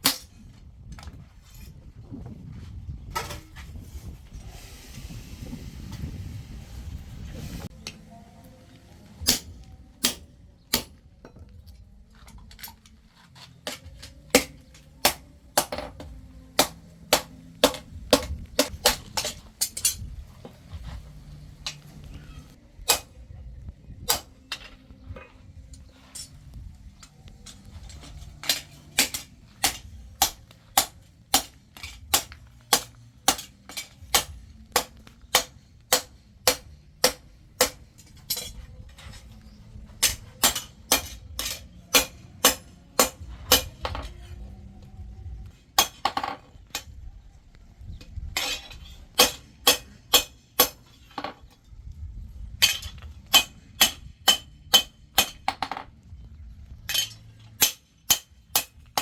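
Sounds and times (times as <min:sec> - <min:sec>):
hammer striking steel on anvil: 0:00.0 - 0:00.5, 0:09.2 - 0:11.4, 0:13.6 - 0:20.1, 0:22.8 - 0:23.2, 0:28.2 - 0:38.6, 0:39.9 - 0:44.3, 0:45.8 - 0:46.9, 0:48.4 - 0:51.3, 0:52.6 - 0:55.9, 0:56.9 - 0:59.0.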